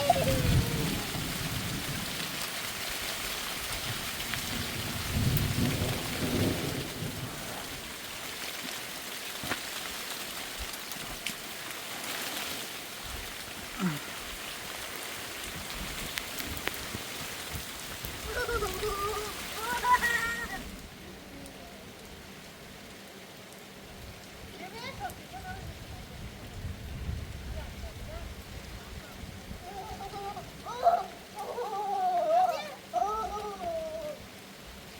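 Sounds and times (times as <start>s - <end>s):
thunder rumble: 0.0s - 2.4s, 3.8s - 7.9s
heavy rain falling: 0.0s - 34.9s.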